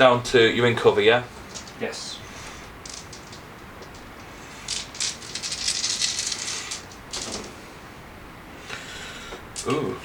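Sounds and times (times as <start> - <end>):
dice clattering: 2.8 - 4.0, 4.7 - 7.5.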